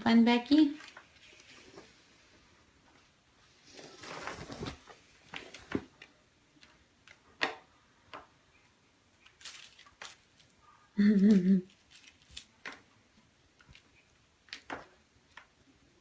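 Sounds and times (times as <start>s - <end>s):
rustle: 9.2s - 10.5s.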